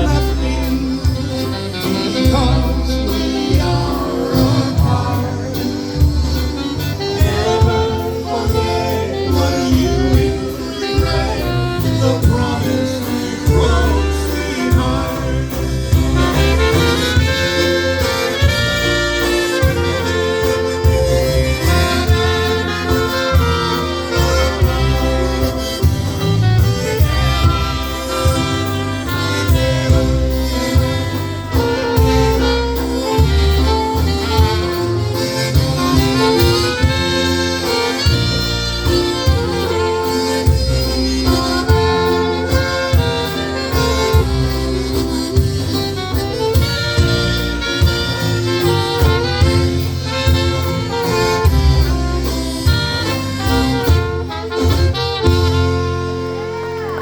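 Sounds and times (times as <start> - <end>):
steady bass pulse: 0.0 - 39.7
polka band playing a waltz: 0.0 - 57.0.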